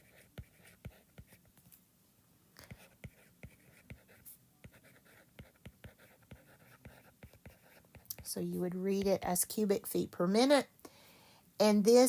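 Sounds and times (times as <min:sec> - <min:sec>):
pen scratching on paper: 0:00.0 - 0:01.5, 0:02.7 - 0:09.3.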